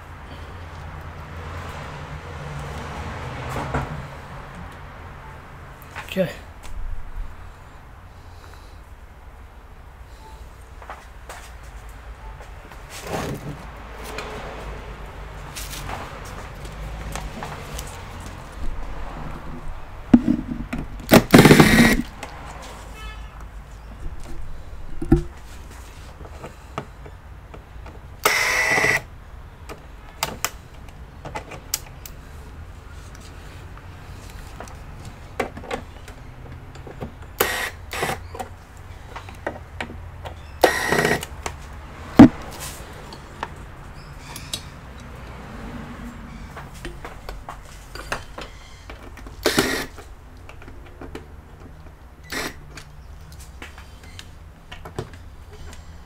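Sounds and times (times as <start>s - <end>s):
short noisy bursts: 21.1s - 22.1s, 49.4s - 50.0s, 52.2s - 52.6s.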